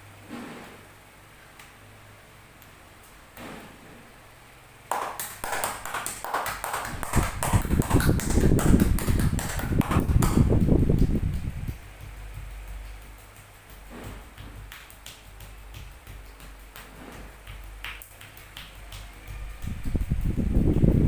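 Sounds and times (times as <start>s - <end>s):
hands slapping body in massage: 4.9s - 20.9s.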